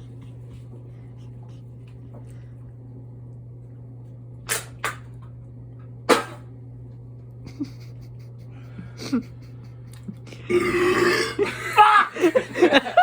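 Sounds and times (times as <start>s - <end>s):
steady low hum: 0.0s - 13.0s
man straining to burp: 10.5s - 11.5s.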